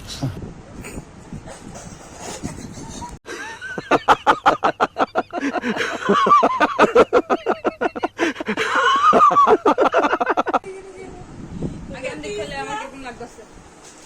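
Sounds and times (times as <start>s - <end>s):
hearty laughter: 0.8s - 10.7s.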